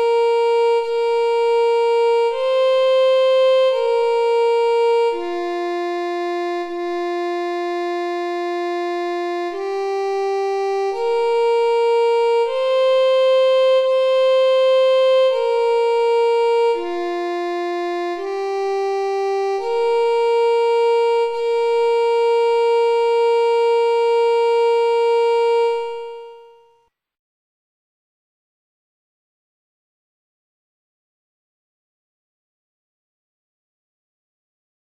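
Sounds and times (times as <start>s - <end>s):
siren playing slow melody: 0.0s - 26.8s.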